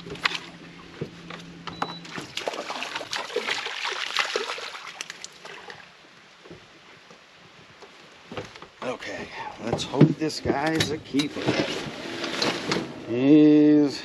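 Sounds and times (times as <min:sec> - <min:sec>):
water splashing: 0:00.0 - 0:01.2, 0:02.0 - 0:06.2
low steady hum: 0:00.0 - 0:14.0.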